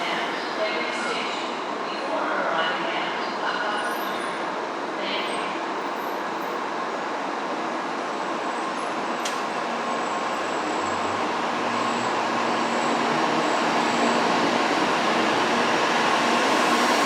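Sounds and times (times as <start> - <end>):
train running noise: 0.0 - 17.0.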